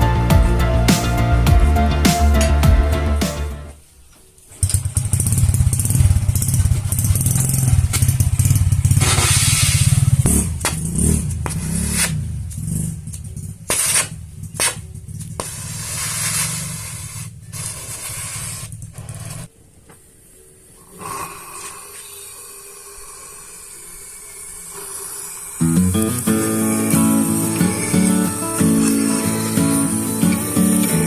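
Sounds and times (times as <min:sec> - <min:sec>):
motorcycle engine revving: 0:04.6 - 0:19.5, 0:25.6 - 0:31.0.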